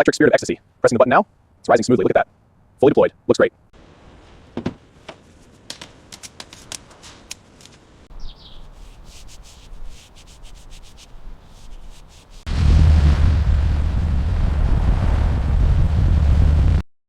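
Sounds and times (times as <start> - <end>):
faint rubbing: 4.0 - 12.5.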